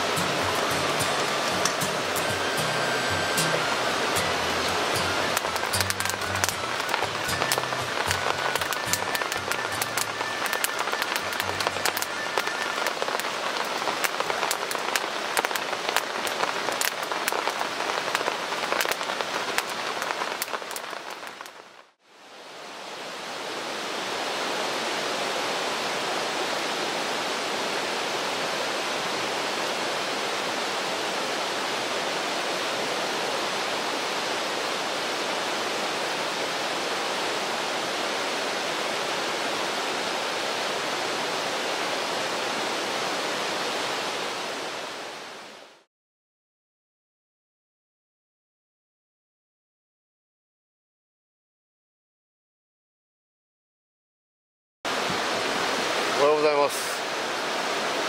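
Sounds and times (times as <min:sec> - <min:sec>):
rain hiss: 0:00.0 - 0:45.9, 0:54.9 - 0:58.0
rain drop taps: 0:00.1 - 0:02.3, 0:05.0 - 0:21.6.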